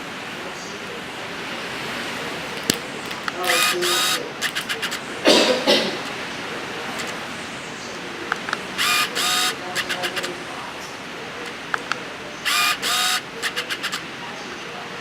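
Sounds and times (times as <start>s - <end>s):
camera mechanical buzzing: 2.6s - 5.0s, 7.0s - 7.2s, 8.4s - 10.4s, 11.8s - 14.0s
faint clicks: 8.3s - 14.1s.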